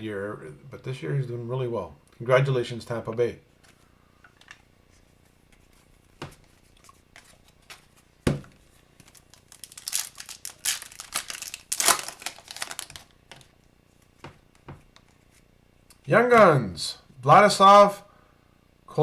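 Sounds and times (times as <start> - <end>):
foil wrapper crinkling and tearing: 9.0 - 13.5.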